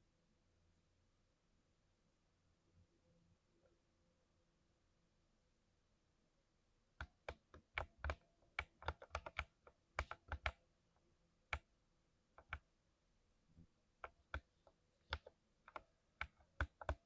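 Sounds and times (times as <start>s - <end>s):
mechanical keyboard typing: 7.0s - 10.6s, 12.4s - 12.6s, 14.0s - 17.0s.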